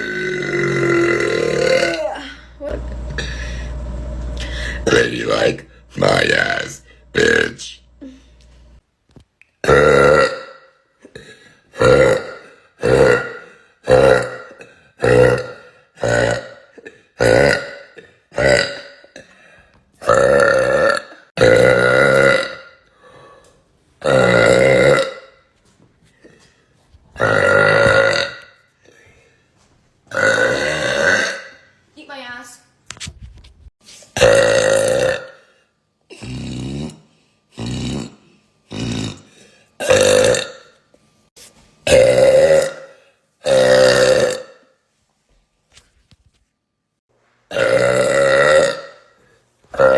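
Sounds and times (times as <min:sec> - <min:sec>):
woman burping: 0:00.0 - 0:03.4, 0:07.2 - 0:08.4, 0:09.6 - 0:19.4, 0:20.0 - 0:22.8, 0:24.0 - 0:25.5, 0:27.2 - 0:28.6, 0:30.1 - 0:31.7, 0:34.2 - 0:35.4, 0:37.6 - 0:40.8, 0:41.9 - 0:44.7, 0:47.5 - 0:49.9.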